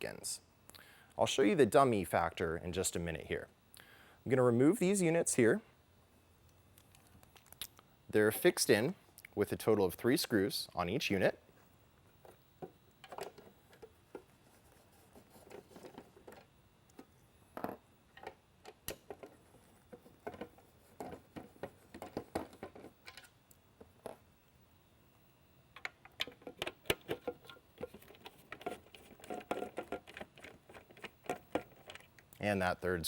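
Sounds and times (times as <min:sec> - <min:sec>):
handling small parts: 0:12.1 - 0:24.2, 0:25.8 - 0:32.3.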